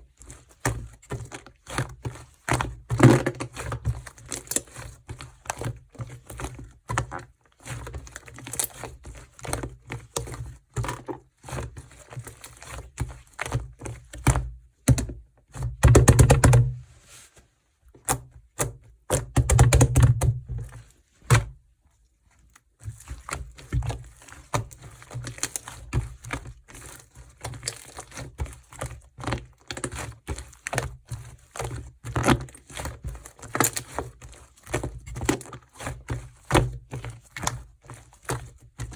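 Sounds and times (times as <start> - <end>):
slime squishing with sticky clicks: 17.9 - 20.7.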